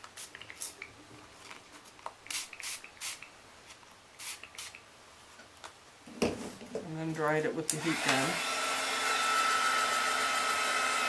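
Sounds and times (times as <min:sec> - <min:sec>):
spray bottle hissing spurts: 0:00.0 - 0:00.9, 0:02.2 - 0:03.3, 0:04.2 - 0:04.9.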